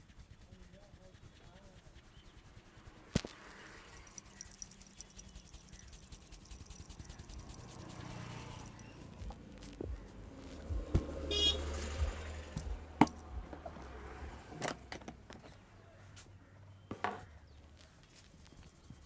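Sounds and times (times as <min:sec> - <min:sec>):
vehicle passing with low rumble: 0:06.8 - 0:15.0
car horn toot: 0:11.2 - 0:12.0.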